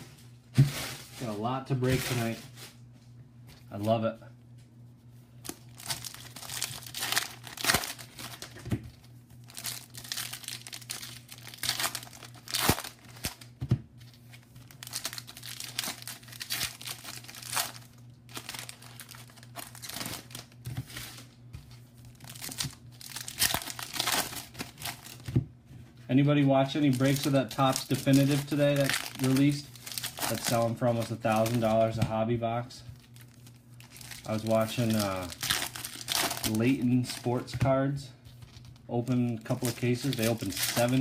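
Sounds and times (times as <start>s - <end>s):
card pack wrappers tearing: 5.4s - 8.6s, 9.4s - 25.3s, 26.6s - 31.9s, 33.0s - 37.5s, 38.5s - 41.0s
wrapper crinkling: 5.4s - 25.3s, 26.6s - 31.9s, 33.0s - 37.4s, 38.3s - 41.0s.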